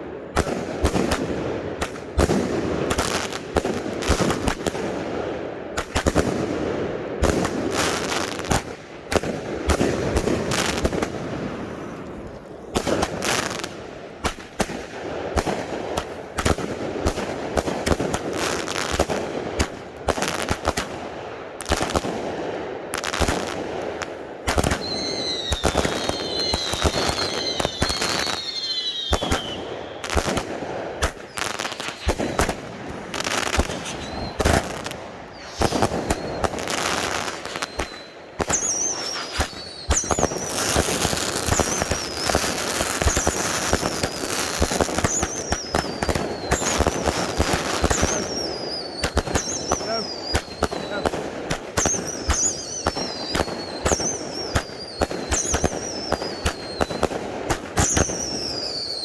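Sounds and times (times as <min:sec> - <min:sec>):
firework cakes firing: 0:00.2 - 0:59.0
firework whistles falling in pitch: 0:24.7 - 0:30.3, 0:33.4 - 0:51.1, 0:51.8 - 0:57.1, 0:57.8 - 0:59.0.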